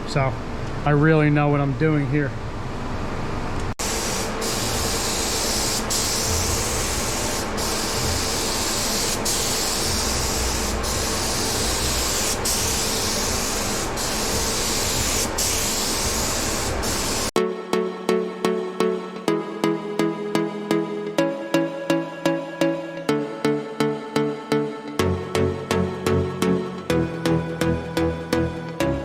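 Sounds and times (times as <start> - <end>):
spray gun hissing: 3.8 - 17.4.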